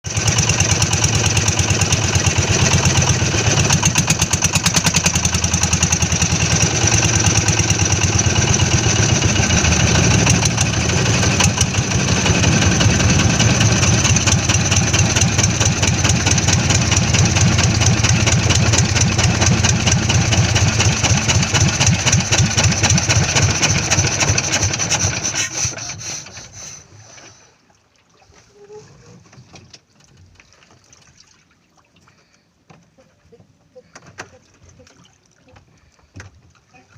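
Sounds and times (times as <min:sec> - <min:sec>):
small engine running: 0:00.1 - 0:26.8.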